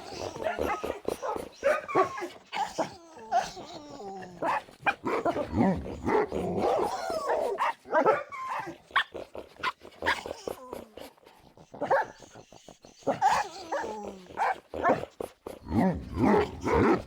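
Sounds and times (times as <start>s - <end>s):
dog barking: 0.4s - 2.7s, 4.4s - 5.4s, 7.2s - 9.2s, 11.8s - 12.2s, 13.1s - 15.1s.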